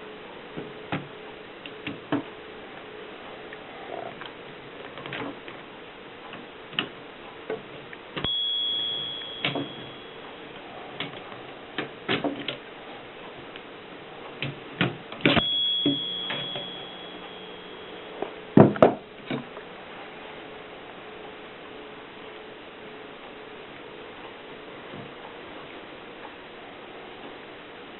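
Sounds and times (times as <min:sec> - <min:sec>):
typewriter margin bell ding: 0:08.2 - 0:10.6, 0:15.3 - 0:18.2.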